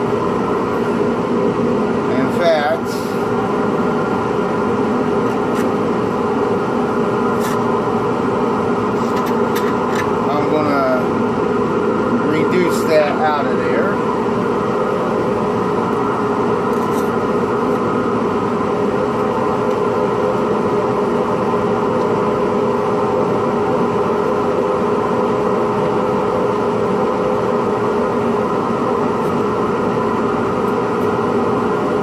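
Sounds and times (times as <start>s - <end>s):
dust extraction vacuum droning: 0.0s - 32.0s.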